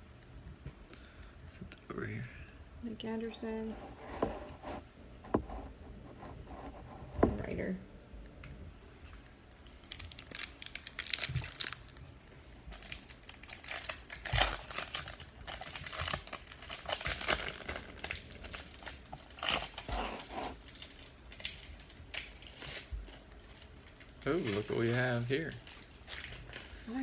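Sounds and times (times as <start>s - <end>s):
card pack wrappers crinkling: 9.6s - 12.1s, 12.7s - 26.8s.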